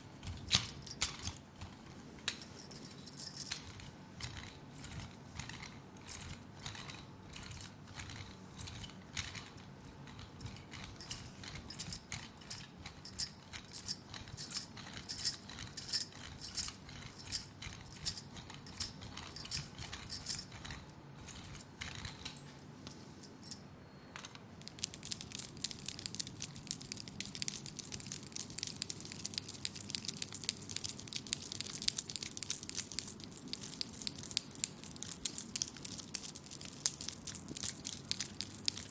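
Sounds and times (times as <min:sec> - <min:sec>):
light metallic jingle: 0:00.0 - 0:07.8, 0:08.6 - 0:23.7, 0:24.7 - 0:38.9.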